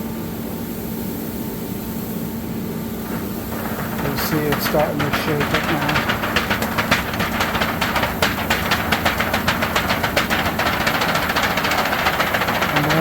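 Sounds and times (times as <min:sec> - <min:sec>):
machine hum: 0:02.7 - 0:13.0
shaker machine rattling: 0:03.0 - 0:13.0.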